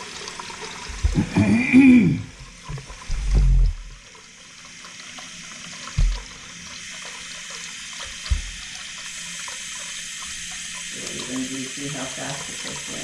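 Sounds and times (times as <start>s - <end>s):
faucet running into sink: 0.0s - 13.0s
dull thumps: 5.9s - 6.4s, 8.1s - 8.7s.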